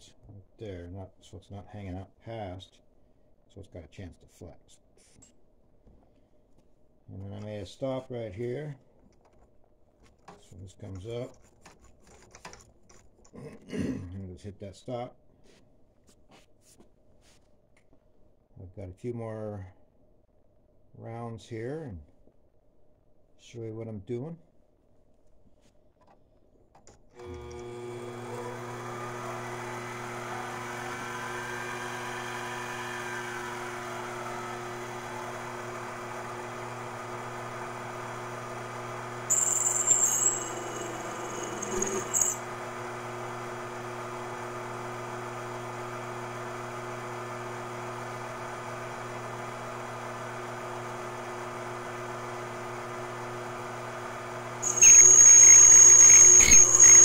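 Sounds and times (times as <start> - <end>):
lathe motor humming: 27.2 - 57.0
high-pitched cutting whine: 39.3 - 42.4, 54.6 - 57.0.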